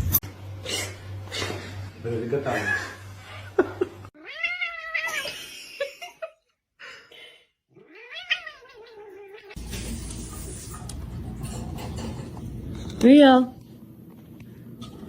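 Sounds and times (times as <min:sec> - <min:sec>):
steady background hum: 0:00.0 - 0:04.1
cat yowling: 0:04.2 - 0:05.3, 0:07.8 - 0:09.6.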